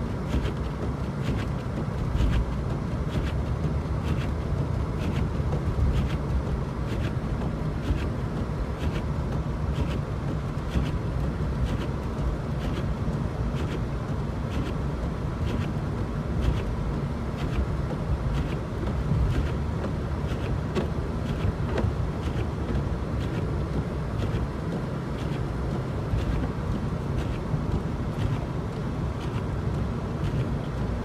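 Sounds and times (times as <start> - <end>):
car road and engine rumble: 0.0 - 31.0.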